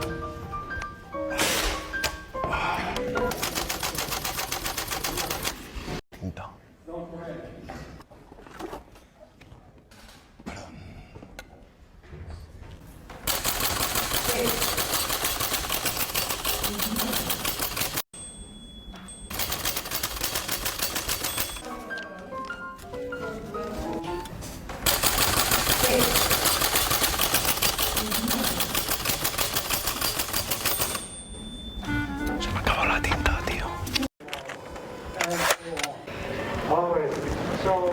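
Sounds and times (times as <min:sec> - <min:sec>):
typewriter keys clattering: 0:03.2 - 0:05.8, 0:13.2 - 0:18.1, 0:19.3 - 0:21.7, 0:24.8 - 0:31.1.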